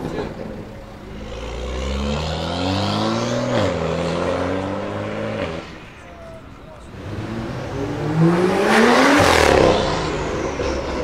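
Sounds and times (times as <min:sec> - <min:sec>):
car engine accelerating hard: 0:01.1 - 0:05.8, 0:06.9 - 0:11.0.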